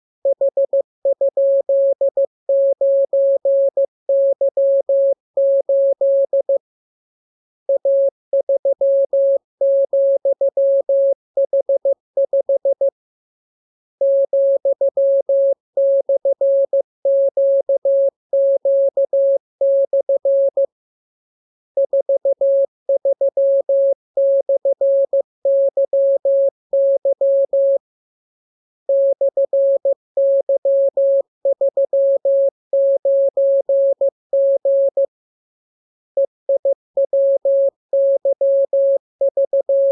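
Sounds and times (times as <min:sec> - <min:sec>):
morse code beeps: 0:36.2 - 0:39.9.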